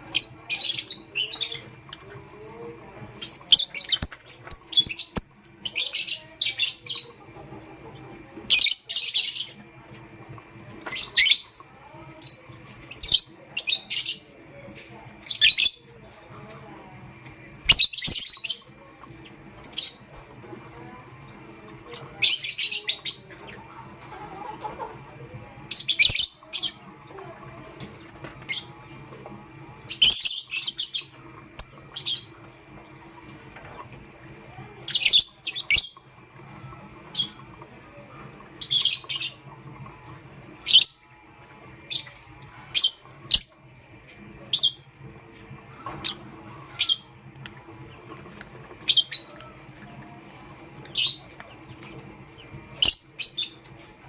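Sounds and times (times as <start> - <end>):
lovebirds chirping: 0.0 - 14.6, 15.2 - 43.7, 44.4 - 54.0.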